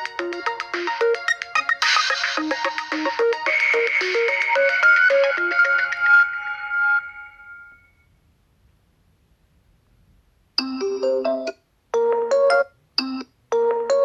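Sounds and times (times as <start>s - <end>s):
melodic phone tone: 0.0s - 8.0s.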